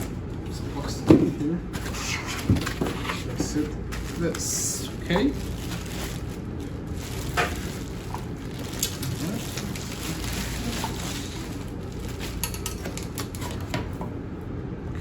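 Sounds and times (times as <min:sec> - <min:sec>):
low background rumble: 0:00.0 - 0:13.4
plastic and foam packaging crackling: 0:01.8 - 0:13.7.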